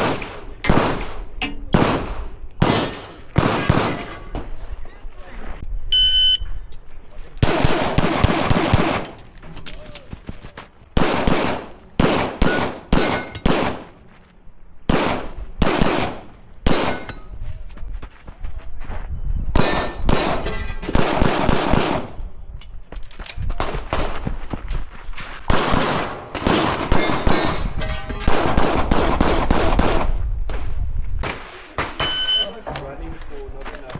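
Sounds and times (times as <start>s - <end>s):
pistol shots echoing: 0.0s - 4.2s, 7.4s - 9.2s, 11.0s - 14.0s, 14.9s - 17.2s, 19.6s - 22.2s, 25.5s - 27.5s.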